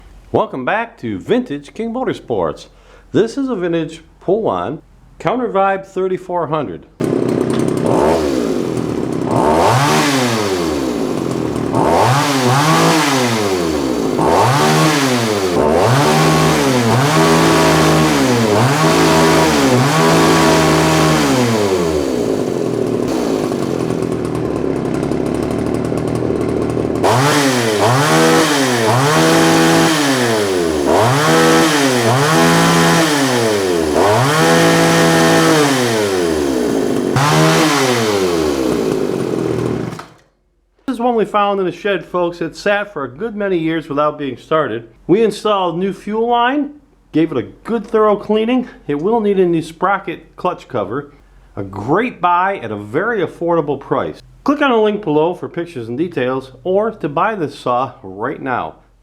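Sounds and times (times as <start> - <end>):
chainsaw engine revving: 7.0 - 40.2
chainsaw idling: 7.0 - 40.2.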